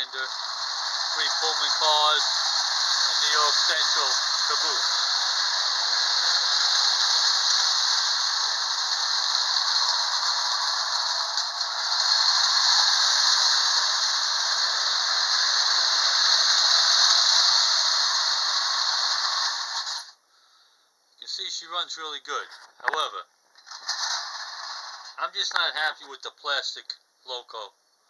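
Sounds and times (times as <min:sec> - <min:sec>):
toy train rattle and whir: 0:00.0 - 0:20.2, 0:23.6 - 0:25.7.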